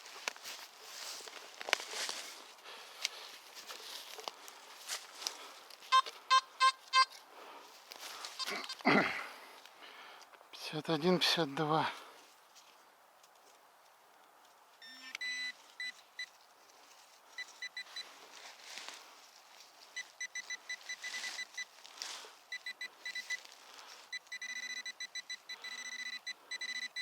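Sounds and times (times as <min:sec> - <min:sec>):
rustling: 0:00.0 - 0:06.3, 0:07.1 - 0:09.8, 0:12.0 - 0:14.8, 0:15.5 - 0:24.3
metal detector high beeps: 0:05.9 - 0:07.2, 0:08.4 - 0:08.8, 0:14.8 - 0:16.3, 0:17.4 - 0:18.1, 0:20.0 - 0:21.7, 0:22.5 - 0:23.4, 0:24.1 - 0:27.0.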